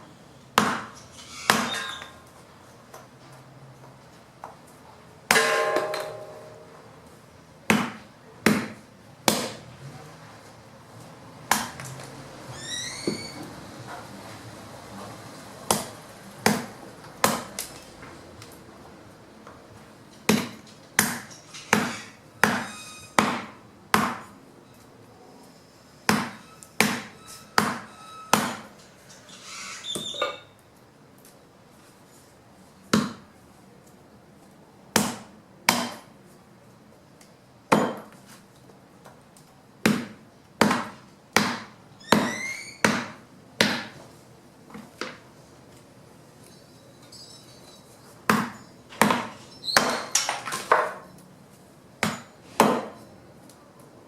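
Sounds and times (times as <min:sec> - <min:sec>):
blade chopping wood: 0:48.3 - 0:50.8.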